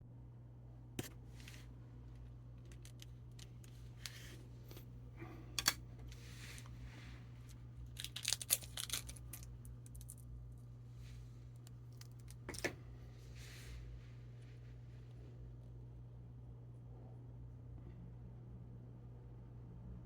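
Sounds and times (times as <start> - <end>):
steady low hum: 0.0 - 20.0
small objects clicking and tapping: 2.6 - 4.8, 7.5 - 10.3, 11.6 - 12.8.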